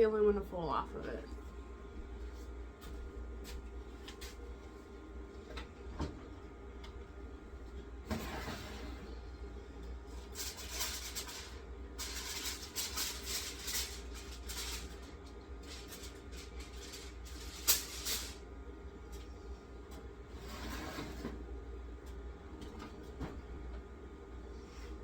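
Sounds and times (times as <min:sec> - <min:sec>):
steady low hum: 0:00.0 - 0:25.0
aluminum foil crinkling: 0:10.2 - 0:18.4.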